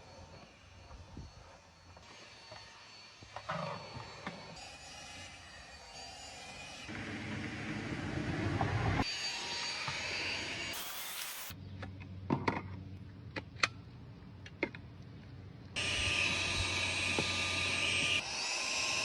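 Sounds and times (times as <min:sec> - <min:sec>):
stick vacuum motor whining: 0:15.8 - 0:19.0.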